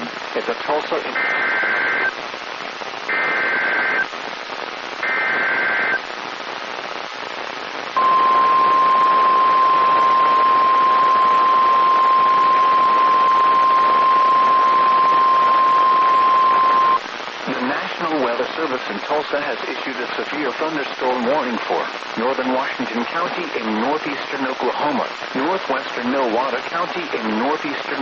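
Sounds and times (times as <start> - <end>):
radio static hiss: 0.0 - 28.0
harsh buzzing data bursts: 1.0 - 7.0, 8.0 - 17.3
steady warning alarm tone: 8.0 - 17.0.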